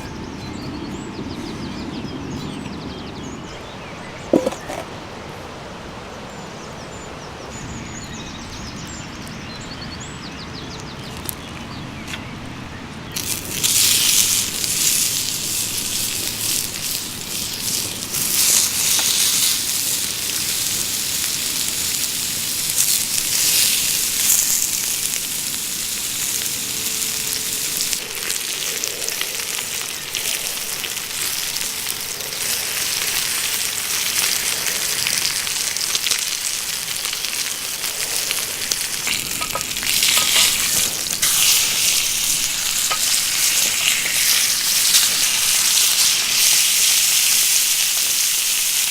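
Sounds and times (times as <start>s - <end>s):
meat sizzling over a fire: 13.1s - 48.9s.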